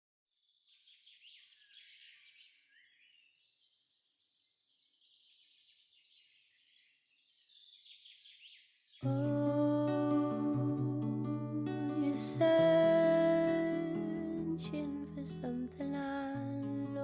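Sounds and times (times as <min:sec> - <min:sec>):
faint birdsong chirps and trills: 0:00.4 - 0:09.8.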